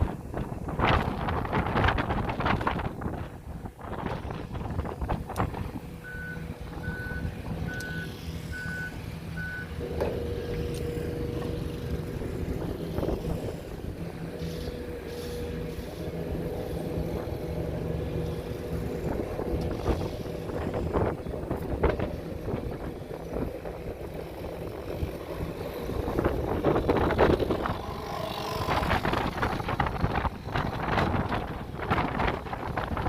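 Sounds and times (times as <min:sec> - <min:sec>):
diesel engine running: 0:00.0 - 0:33.0
reversing alarm beeping: 0:06.0 - 0:12.3
steady hum: 0:07.9 - 0:31.4.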